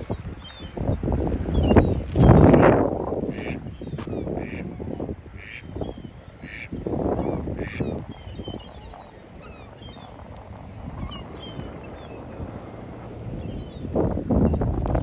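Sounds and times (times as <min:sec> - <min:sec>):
small birds chirping: 0:00.0 - 0:04.6, 0:05.3 - 0:15.0
ducks quacking: 0:01.7 - 0:05.8, 0:06.4 - 0:06.8, 0:07.4 - 0:08.5.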